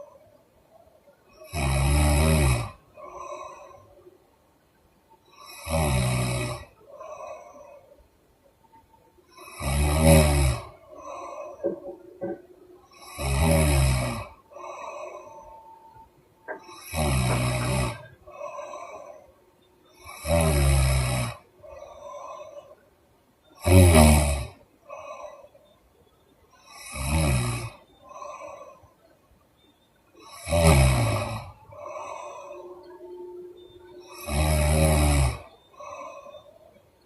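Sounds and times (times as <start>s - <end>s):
woman snoring heavily: 1.4s - 4.0s, 5.3s - 7.9s, 9.3s - 22.8s, 23.6s - 25.5s, 26.6s - 28.8s, 30.2s - 36.6s.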